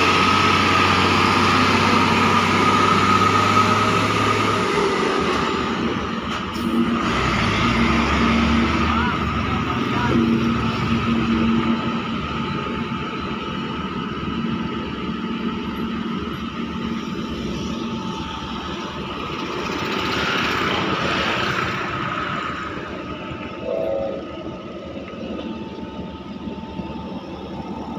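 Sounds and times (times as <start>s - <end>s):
heavy machinery engine running: 0.0s - 27.9s
brief higher tone: 23.5s - 24.7s.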